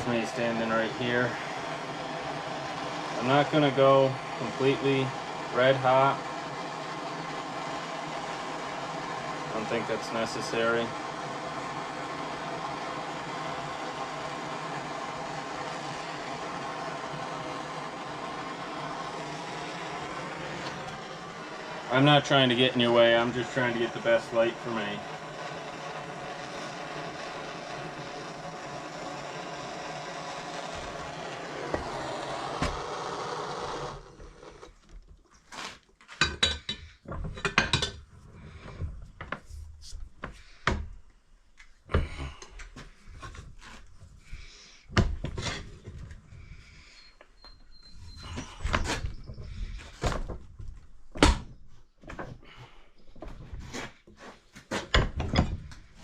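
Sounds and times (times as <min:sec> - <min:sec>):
gas torch hissing: 0:00.0 - 0:34.9, 0:44.1 - 0:50.3
metal knocks and clunks: 0:54.7 - 0:55.8.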